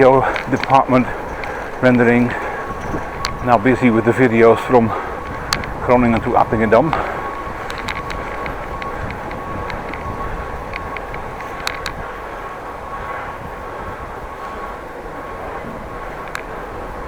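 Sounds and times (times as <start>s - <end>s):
bicycle road noise: 0.0s - 17.0s
steady high whine: 0.0s - 17.0s
wind noise: 0.0s - 17.0s
sharp clicks: 5.2s - 12.0s.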